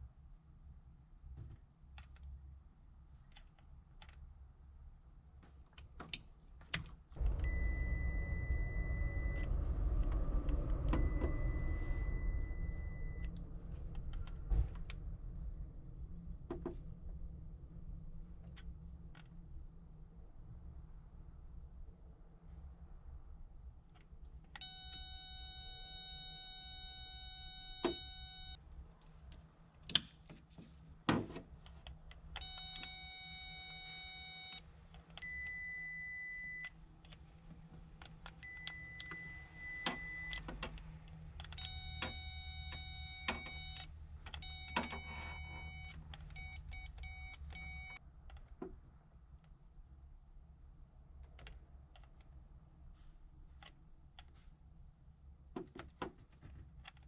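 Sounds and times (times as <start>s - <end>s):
electronic beeping: 7.4s - 9.5s, 11.0s - 13.3s, 24.6s - 28.6s, 32.4s - 34.6s, 41.6s - 48.0s.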